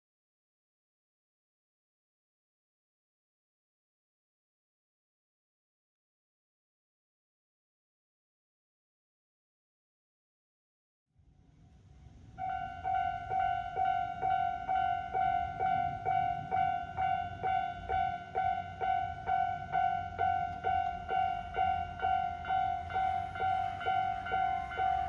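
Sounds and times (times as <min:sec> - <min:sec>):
level crossing warning bell: 0:12.3 - 0:25.0.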